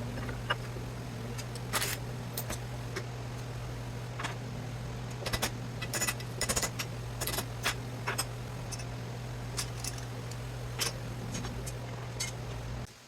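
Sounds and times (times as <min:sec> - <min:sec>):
low hum: 0:00.0 - 0:12.9
small metal parts clinking: 0:01.4 - 0:02.6, 0:05.2 - 0:08.9, 0:09.5 - 0:12.4.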